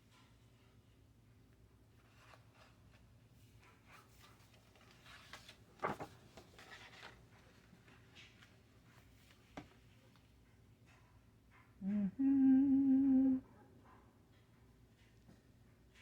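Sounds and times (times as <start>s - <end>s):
paper rustling: 4.2s - 7.6s
low steady hum: 11.8s - 13.6s.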